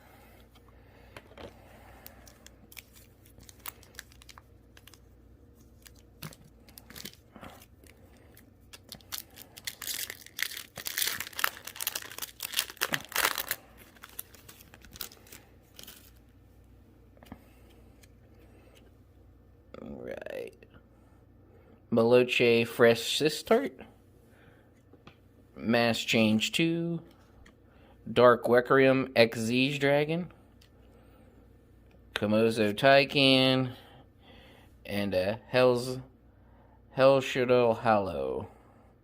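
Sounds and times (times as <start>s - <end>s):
foil wrappers crinkling and tearing: 2.0s - 16.2s.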